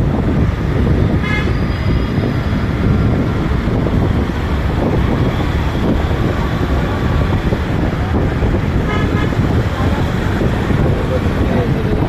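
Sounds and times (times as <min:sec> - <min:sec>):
road traffic rumble: 0:00.0 - 0:12.0
wind buffeting microphone: 0:00.0 - 0:12.0
vehicle horn toot: 0:01.2 - 0:02.0, 0:08.9 - 0:09.4.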